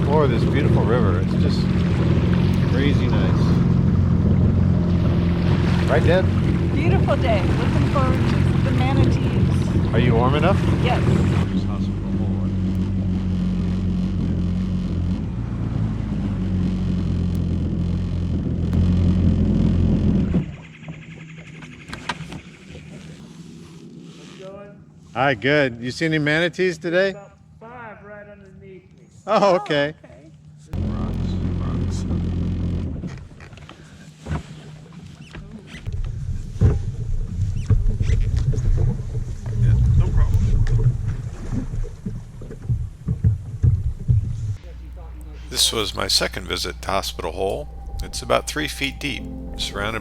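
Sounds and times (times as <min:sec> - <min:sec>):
low rumbling: 0:00.0 - 0:21.8, 0:35.8 - 0:50.0
watercraft engine droning: 0:00.0 - 0:29.8, 0:30.4 - 0:50.0.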